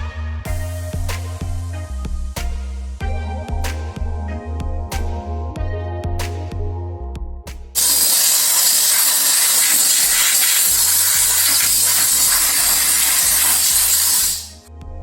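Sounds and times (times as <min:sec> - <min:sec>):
background music with beat: 0:00.0 - 0:08.1, 0:10.1 - 0:15.0
steam cleaner hissing: 0:07.8 - 0:14.7.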